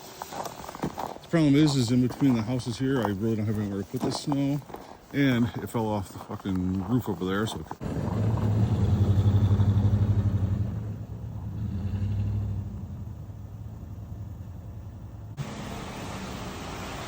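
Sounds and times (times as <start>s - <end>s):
engine running with rapid pulse: 7.8s - 15.4s.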